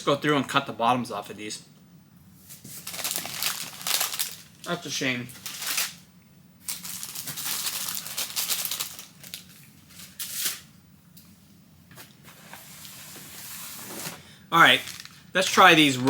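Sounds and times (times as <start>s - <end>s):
plastic packaging crinkling: 2.7s - 6.0s, 6.6s - 10.7s, 14.6s - 16.0s.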